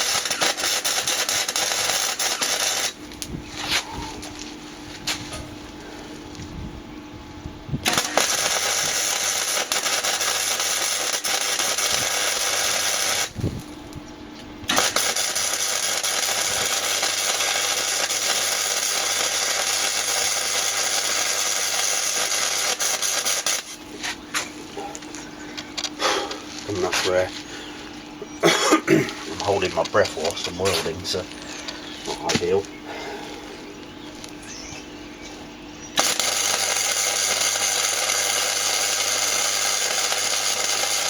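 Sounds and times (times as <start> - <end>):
crackling welding arc: 0.0 - 4.4, 7.8 - 14.0, 14.6 - 24.2, 24.9 - 27.3, 29.1 - 31.4, 36.0 - 41.0.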